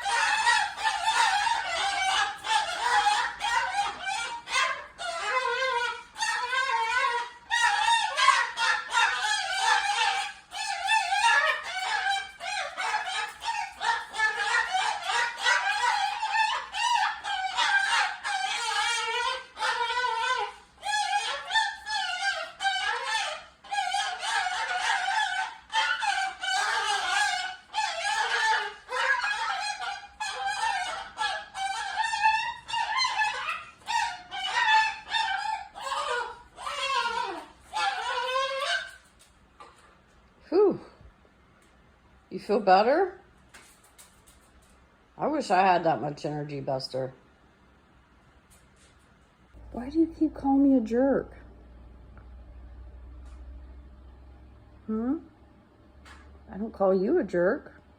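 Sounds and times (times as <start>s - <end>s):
cockatoo screaming: 0.0s - 39.9s
parrot squawking: 0.0s - 39.9s, 49.7s - 51.4s.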